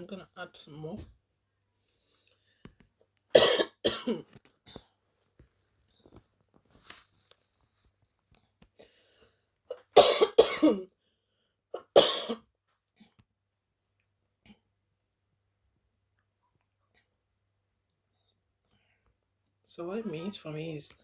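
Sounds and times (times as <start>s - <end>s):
woman coughing: 3.4s - 4.3s, 9.7s - 10.9s, 11.8s - 12.4s.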